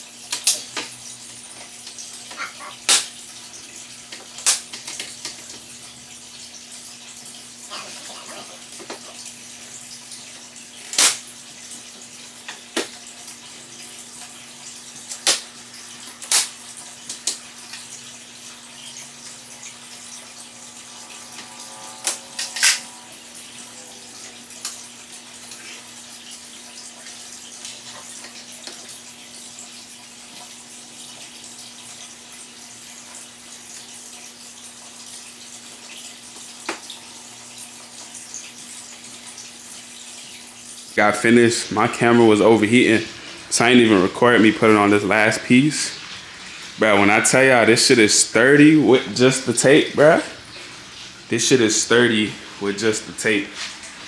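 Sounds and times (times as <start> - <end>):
steady hiss: 19.0 - 24.4.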